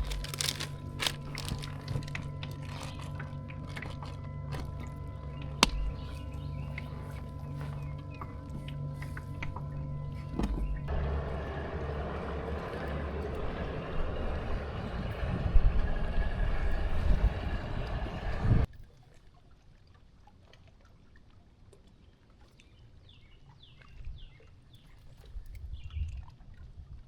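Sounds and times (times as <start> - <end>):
water sloshing against kayak: 0.0 - 27.0
wind buffeting microphone: 5.0 - 18.7, 25.6 - 26.3.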